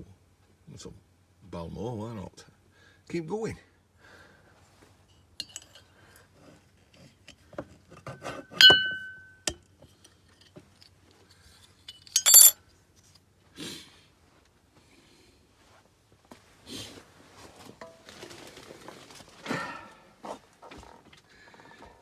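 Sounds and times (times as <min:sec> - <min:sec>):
metal objects knocking and clinking: 0:08.6 - 0:09.3, 0:11.9 - 0:12.6
metal piece ringing: 0:08.6 - 0:09.4, 0:12.0 - 0:12.6.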